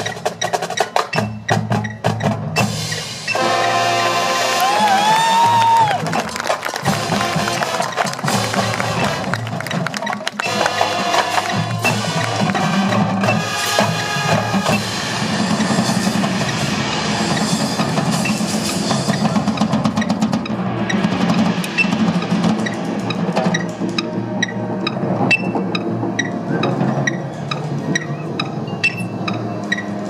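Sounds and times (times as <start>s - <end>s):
marching drums playing: 0.0s - 27.8s
wind instruments holding chords: 3.1s - 19.5s.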